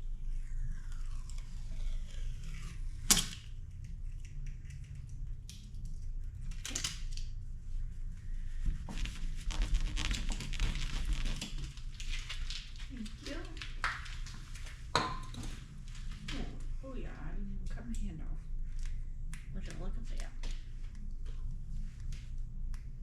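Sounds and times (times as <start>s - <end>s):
sticker scraping and peeling: 8.9s - 13.5s.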